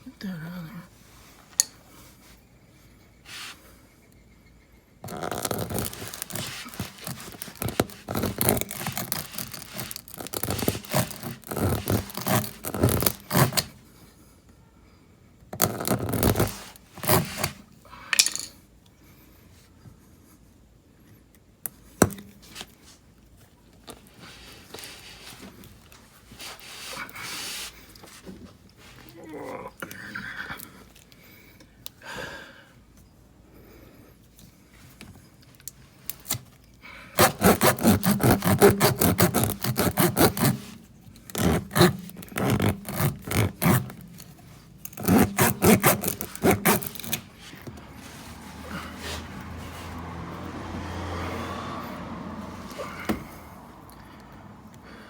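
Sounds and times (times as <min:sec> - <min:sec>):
tire plug tool scraping rubber: 0:05.0 - 0:13.8, 0:15.6 - 0:18.5, 0:37.2 - 0:50.4.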